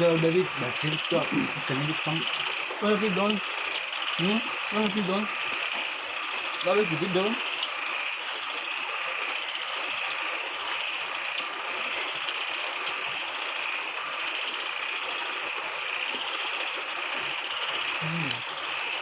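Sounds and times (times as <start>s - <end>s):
forest insects buzzing: 0.0s - 6.0s, 17.5s - 19.0s.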